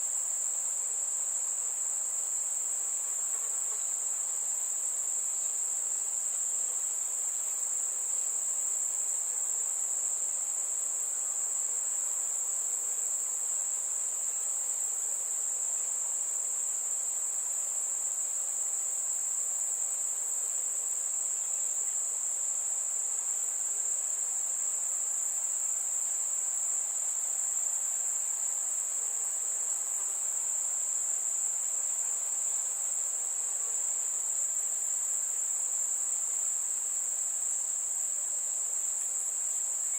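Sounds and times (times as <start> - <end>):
crickets trilling: 0.0 - 39.9
faint background hiss: 0.0 - 39.9.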